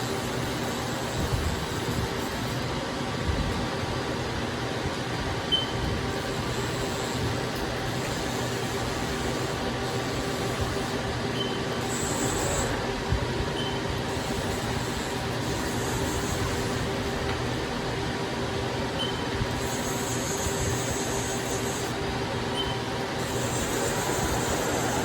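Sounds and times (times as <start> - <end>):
lathe machine hum: 6.1 - 25.0
high hiss: 23.2 - 25.0.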